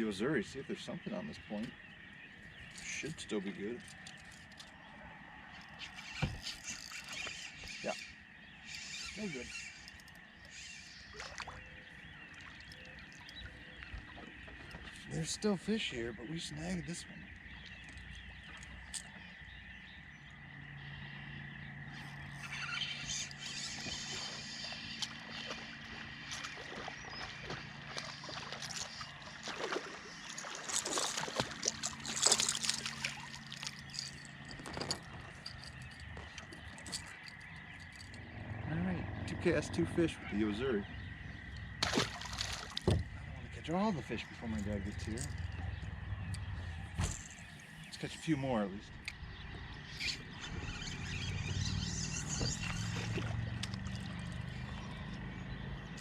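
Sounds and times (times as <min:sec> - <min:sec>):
boat motor humming: 0:00.0 - 0:56.0
water splashing: 0:10.6 - 0:16.0, 0:23.1 - 0:38.0, 0:41.7 - 0:45.6, 0:51.2 - 0:56.0
knocks and rattles on boat: 0:42.7 - 0:43.5.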